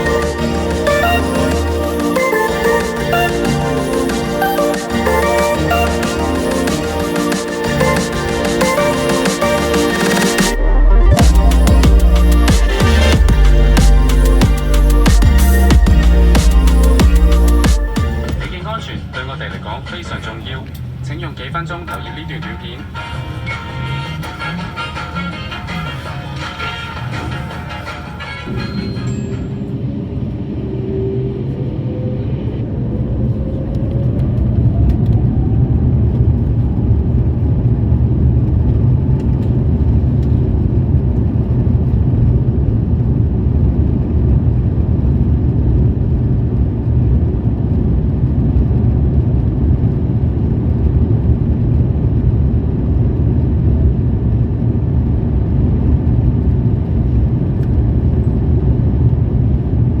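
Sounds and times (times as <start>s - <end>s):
jet engines whining: 0.0s - 37.9s
jet engine rumble drone: 0.0s - 60.0s.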